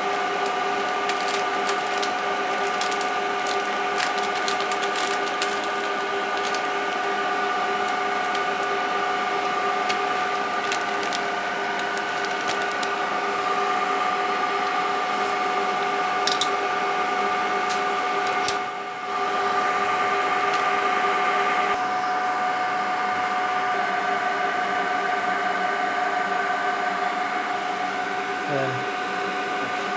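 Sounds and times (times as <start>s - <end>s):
constant whining tones: 0.0s - 13.1s
cooling fans whirring: 0.0s - 29.9s.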